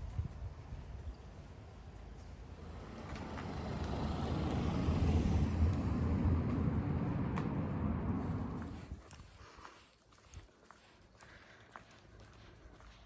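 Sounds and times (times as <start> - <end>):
vehicle passing: 2.3 - 9.1.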